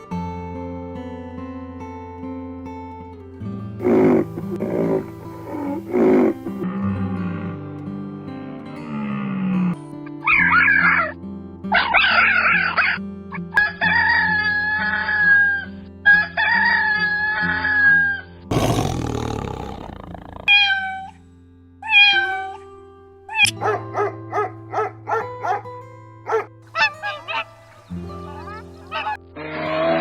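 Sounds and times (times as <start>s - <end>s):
background music: 0.0s - 17.4s, 21.8s - 30.0s
animal calls: 3.8s - 7.6s, 8.8s - 11.1s, 11.7s - 21.2s, 21.8s - 22.6s, 23.3s - 25.7s, 26.3s - 30.0s.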